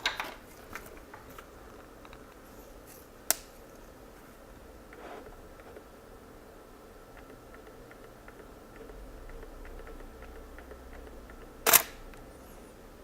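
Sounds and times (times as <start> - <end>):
camera shutter releasing: 11.6 - 12.0.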